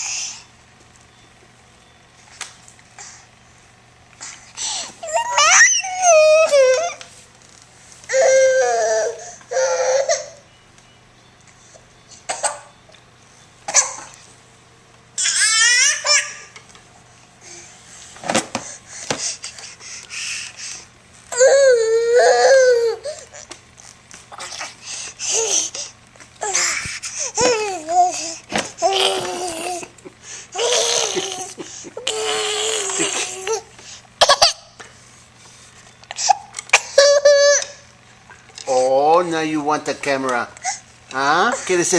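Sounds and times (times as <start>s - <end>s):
baby laughing and babbling: 24.3s - 30.0s, 30.6s - 34.6s.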